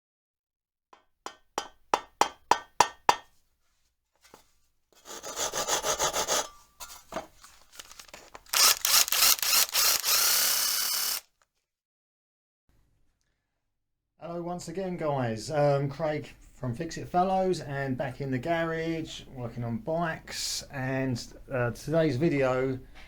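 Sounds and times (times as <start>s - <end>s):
sharp tool taps: 1.3s - 3.3s
rasping tool strokes: 5.0s - 7.1s, 7.8s - 11.2s.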